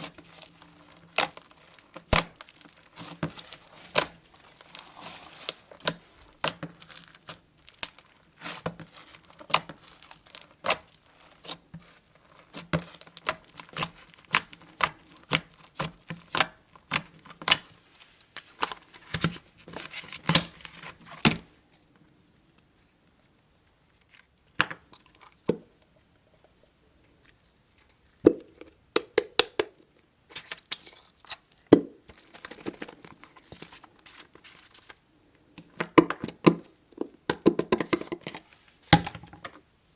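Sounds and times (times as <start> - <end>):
slime squishing: 0.0 - 21.3.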